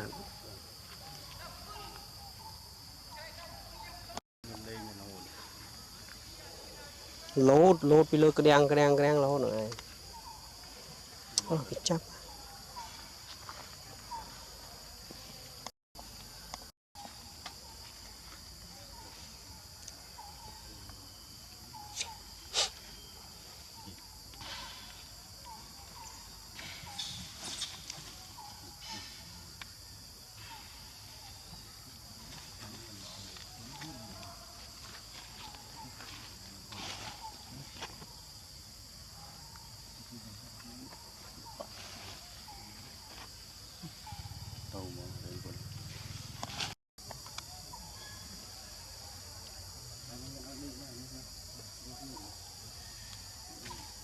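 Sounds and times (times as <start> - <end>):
insects droning: 0.0 - 54.0
faint chirping calls: 16.2 - 38.2.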